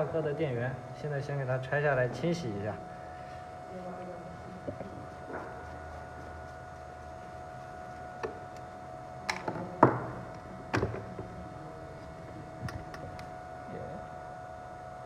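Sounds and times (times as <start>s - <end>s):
steady high hum: 0.0s - 15.0s.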